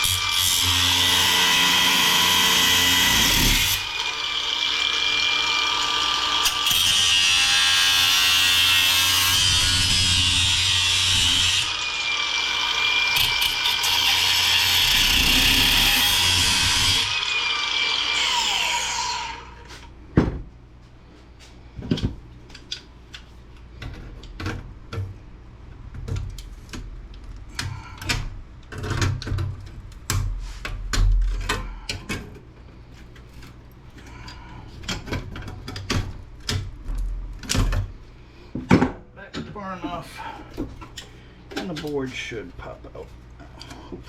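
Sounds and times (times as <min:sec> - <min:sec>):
power tool whine: 0:00.0 - 0:19.6.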